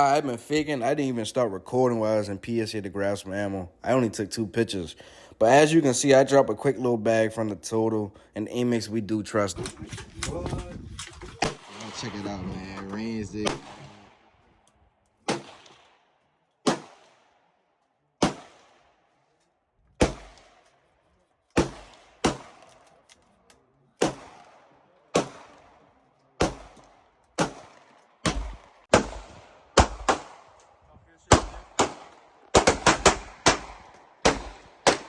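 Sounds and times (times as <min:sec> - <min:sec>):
gunshots with echo: 0:11.4 - 0:14.4, 0:15.3 - 0:16.0, 0:16.7 - 0:17.4, 0:18.2 - 0:18.9, 0:21.6 - 0:22.7, 0:26.4 - 0:30.6, 0:31.3 - 0:35.0.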